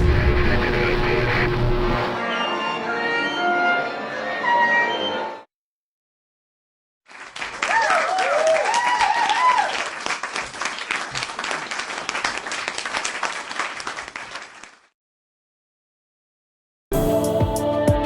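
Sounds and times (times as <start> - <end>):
crowd applauding: 7.1 - 14.9
cheering whoops: 7.6 - 9.9.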